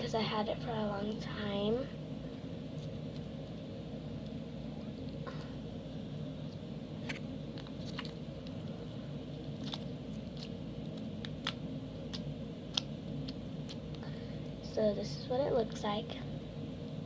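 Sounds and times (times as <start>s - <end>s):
low background hum: 0.0s - 17.0s
crunchy slime clicks and crackles: 7.0s - 8.6s, 9.4s - 14.0s.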